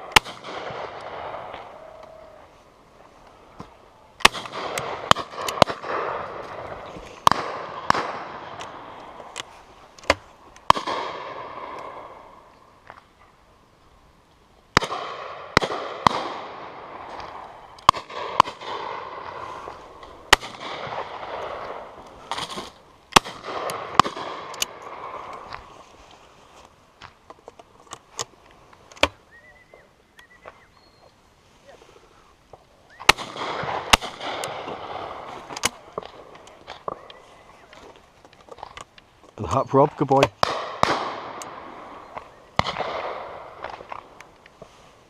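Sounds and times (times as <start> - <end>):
shotgun shots echoing: 0.0 - 2.0, 4.2 - 9.2, 10.0 - 12.4, 14.8 - 25.5, 33.0 - 37.1, 40.0 - 44.2.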